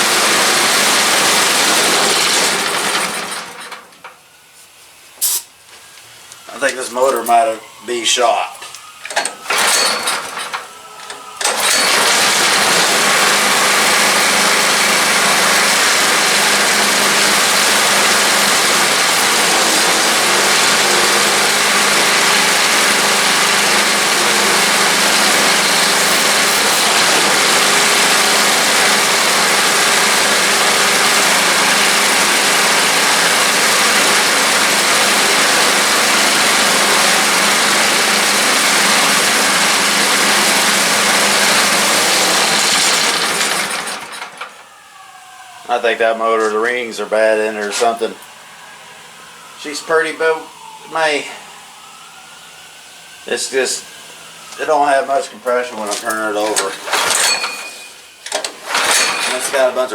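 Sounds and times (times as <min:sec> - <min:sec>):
small gasoline engine running: 0:00.0 - 0:04.0, 0:11.4 - 0:44.4.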